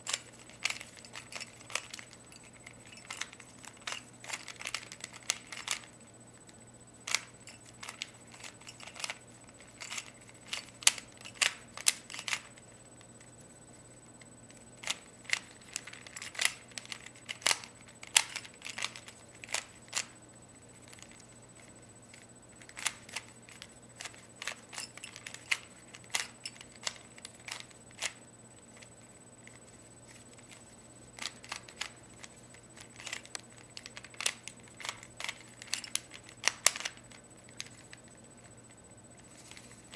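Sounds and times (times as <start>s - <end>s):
puzzle cube clicking: 0.0s - 5.9s, 7.0s - 12.6s, 14.8s - 20.2s, 22.6s - 28.2s, 31.2s - 38.1s.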